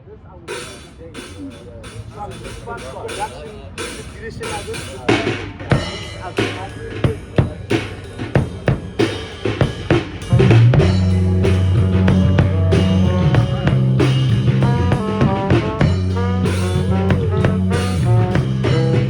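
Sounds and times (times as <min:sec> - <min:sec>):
drum kit beat: 0:00.5 - 0:19.0
melodic lead instrument: 0:05.7 - 0:19.0
bass line: 0:09.4 - 0:19.0.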